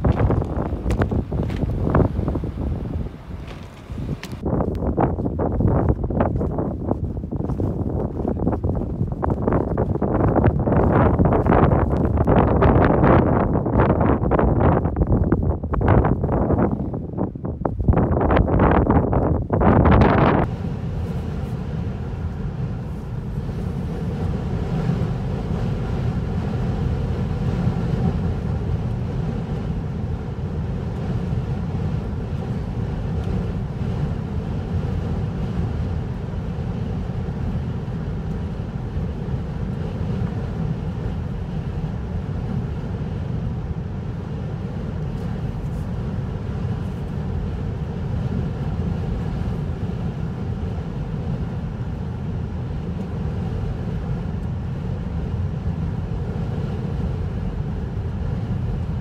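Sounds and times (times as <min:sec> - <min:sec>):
vehicle driving on road: 0:00.0 - 0:05.3
faint steady hum: 0:00.0 - 0:59.0.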